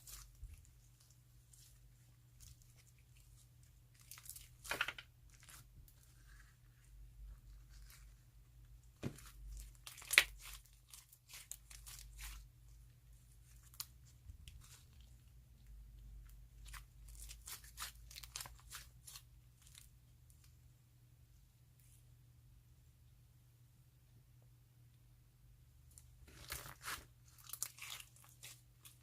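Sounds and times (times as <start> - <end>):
slime crunching and crackling: 0.0 - 6.6, 9.0 - 12.5, 16.5 - 19.9, 26.2 - 29.0.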